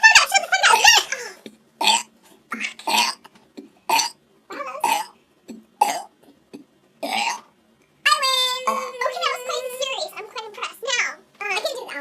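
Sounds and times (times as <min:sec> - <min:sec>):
person burping: 0:01.4 - 0:04.2, 0:04.8 - 0:07.5, 0:08.6 - 0:09.2.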